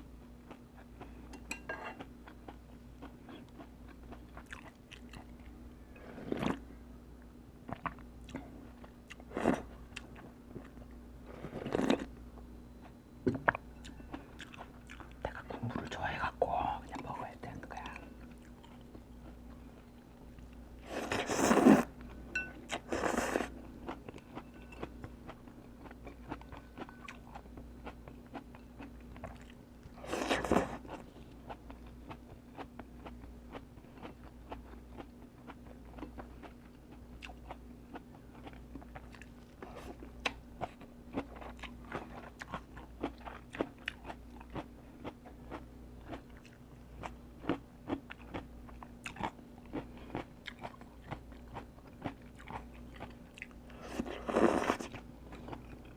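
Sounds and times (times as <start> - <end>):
chewing with crunchy clicks: 0.4 - 5.6, 7.7 - 16.3, 16.9 - 20.6, 21.9 - 55.9
noisy slurping of noodle soup: 20.9 - 21.9.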